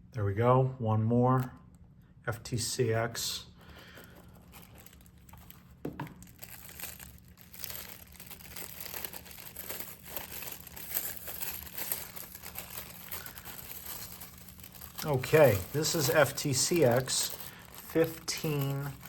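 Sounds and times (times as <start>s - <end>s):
packaging crinkling and rustling: 3.6s - 19.0s.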